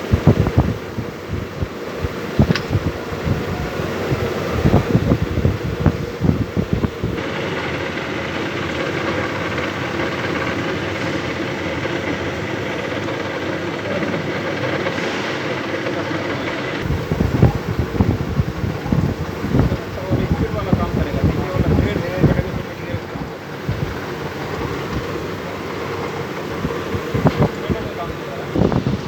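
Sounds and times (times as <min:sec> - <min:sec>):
wind on microphone: 0:00.0 - 0:07.2, 0:16.8 - 0:29.0
lathe humming: 0:00.0 - 0:29.0.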